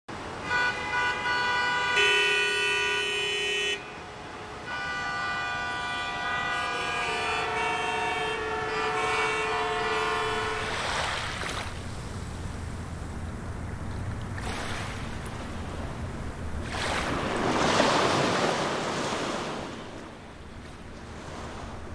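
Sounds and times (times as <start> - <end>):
sustained horn-like chords: 0.4 - 10.8.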